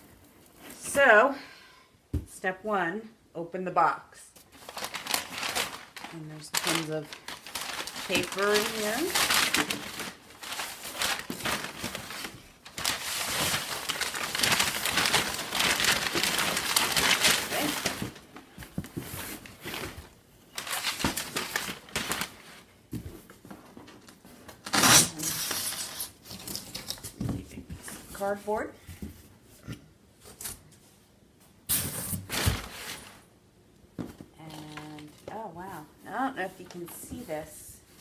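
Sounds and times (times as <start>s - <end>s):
packing paper crinkling: 4.5s - 22.7s.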